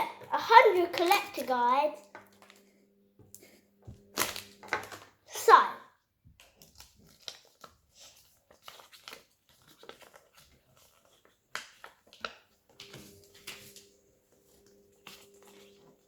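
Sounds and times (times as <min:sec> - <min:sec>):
toy packaging clicks and crinkles: 0:00.2 - 0:02.7, 0:04.1 - 0:05.2, 0:06.4 - 0:13.8.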